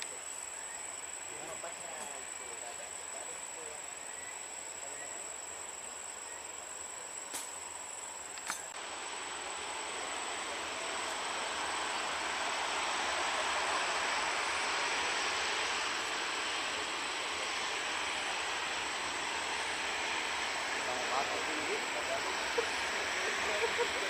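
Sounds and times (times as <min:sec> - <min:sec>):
jet engine rushing: 0:08.5 - 0:24.0.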